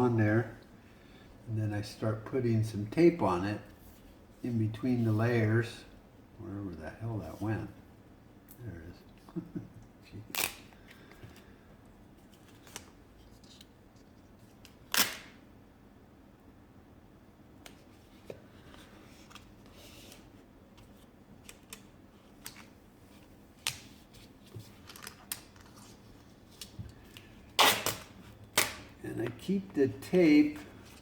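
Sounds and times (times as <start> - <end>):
tape and wire rustling: 17.7 - 31.0.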